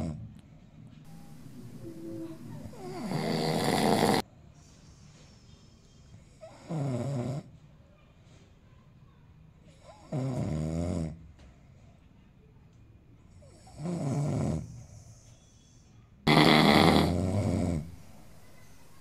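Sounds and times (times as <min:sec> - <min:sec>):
man snoring loudly: 0:01.2 - 0:04.2, 0:16.3 - 0:18.1.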